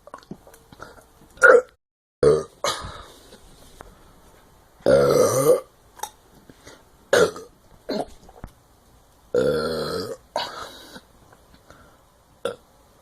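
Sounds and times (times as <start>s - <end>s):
person burping: 1.4s - 3.0s, 4.8s - 5.7s, 7.1s - 8.2s, 9.3s - 11.0s, 12.4s - 12.6s.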